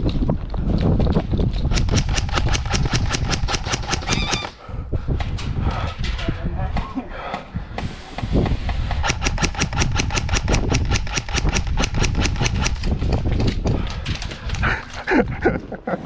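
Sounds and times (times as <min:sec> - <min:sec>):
low rumbling movement noise: 0:00.0 - 0:16.0
airsoft gun rapid shots: 0:01.7 - 0:04.6, 0:09.0 - 0:12.9.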